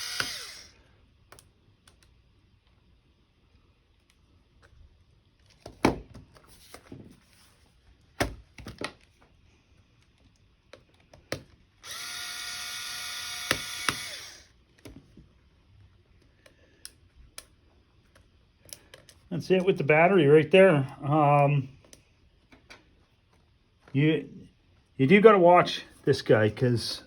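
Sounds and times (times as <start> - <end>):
electric screwdriver running: 0.0 - 0.8, 11.8 - 14.5.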